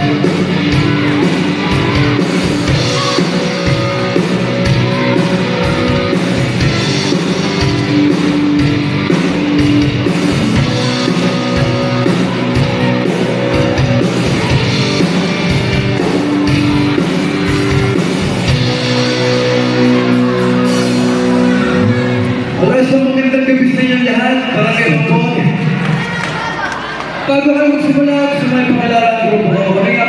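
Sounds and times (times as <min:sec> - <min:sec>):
guitar chords: 0:00.0 - 0:23.7
live band playing rock music: 0:00.0 - 0:25.8.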